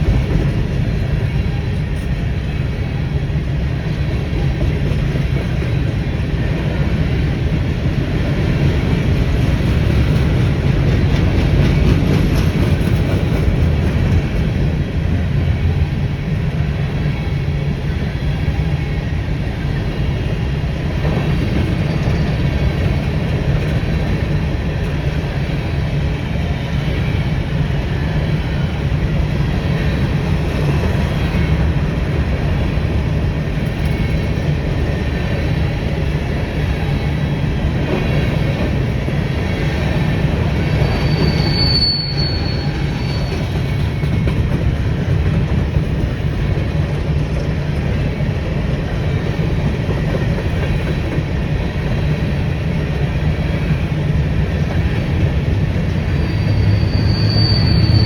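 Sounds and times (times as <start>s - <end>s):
freight train rumbling on rails: 0.0s - 58.0s.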